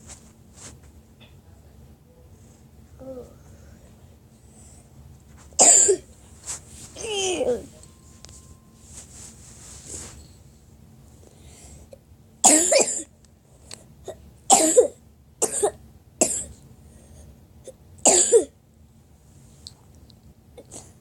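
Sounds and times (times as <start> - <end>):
person coughing: 5.6 - 6.1, 12.4 - 13.1, 14.1 - 16.5, 18.1 - 18.5.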